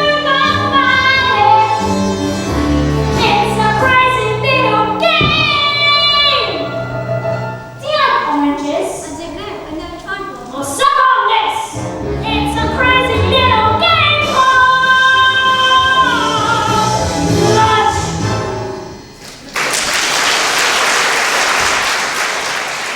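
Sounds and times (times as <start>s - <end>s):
musical accompaniment: 0.0s - 8.6s, 11.7s - 19.5s
young performers singing: 11.4s - 18.6s
audience applause: 19.2s - 22.9s.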